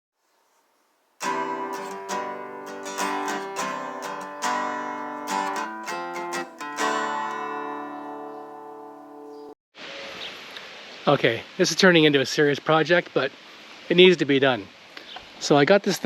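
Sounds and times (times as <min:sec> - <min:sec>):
strummed acoustic guitar: 0:01.2 - 0:09.5.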